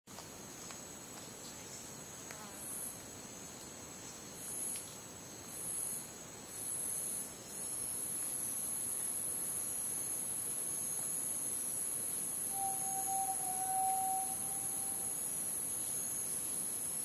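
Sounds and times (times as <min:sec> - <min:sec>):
high-pitched insect drone: 0:09.6 - 0:17.0
higher pulsing insect buzz: 0:12.4 - 0:17.0.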